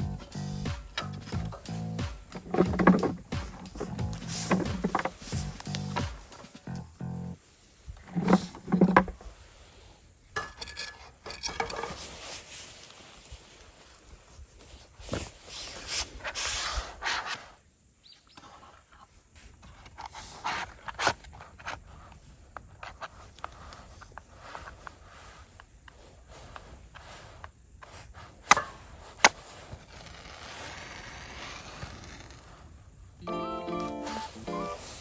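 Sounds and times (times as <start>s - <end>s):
scraping and rubbing: 1.0s - 6.7s, 7.9s - 9.8s
knocks and clicks: 2.2s - 6.6s, 8.1s - 9.2s.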